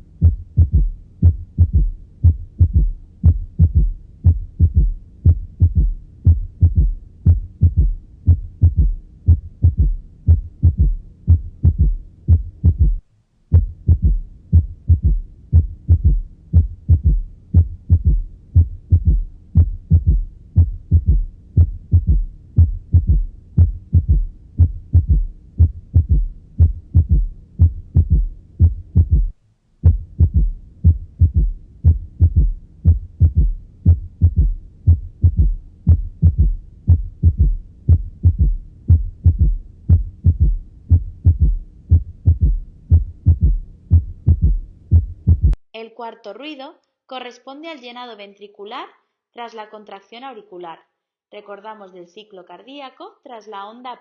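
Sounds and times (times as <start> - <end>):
heart beating through stethoscope: 0.0 - 45.6.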